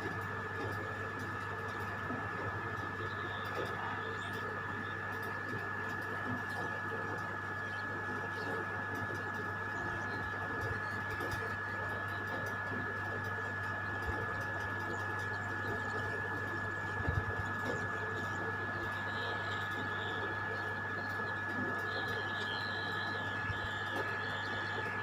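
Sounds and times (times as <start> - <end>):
electrical hum: 0.0 - 25.0
high-pitched whine: 15.8 - 25.0.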